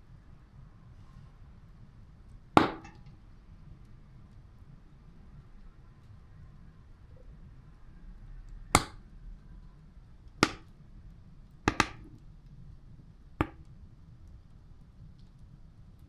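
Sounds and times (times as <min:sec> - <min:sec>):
wood fire burning: 0:01.9 - 0:07.0, 0:08.5 - 0:16.0
loud pops of cracking wood: 0:08.8 - 0:09.0, 0:10.4 - 0:10.8, 0:11.7 - 0:12.3.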